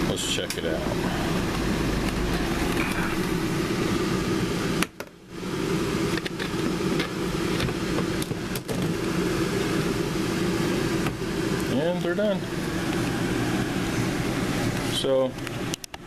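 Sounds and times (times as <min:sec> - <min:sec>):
washer spin motor humming: 0:00.0 - 0:16.0.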